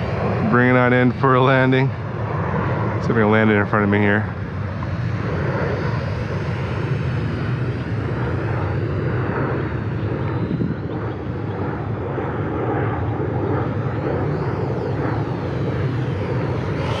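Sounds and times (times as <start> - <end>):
low rumble: 0.0 - 3.0
small electric motor whining: 12.7 - 17.0.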